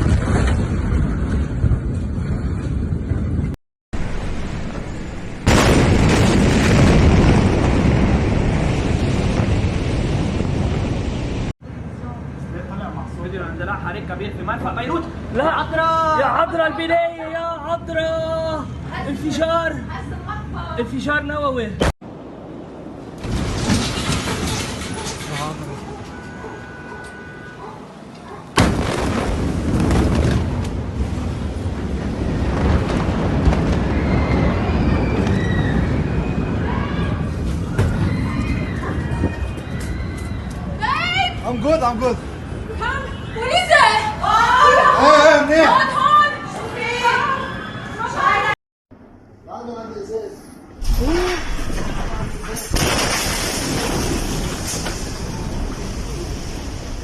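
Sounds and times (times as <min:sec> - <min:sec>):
loud explosion rumble: 0:02.8 - 0:11.5, 0:28.6 - 0:39.4
explosion crack: 0:04.0 - 0:11.5, 0:28.6 - 0:38.4, 0:50.8 - 0:57.0.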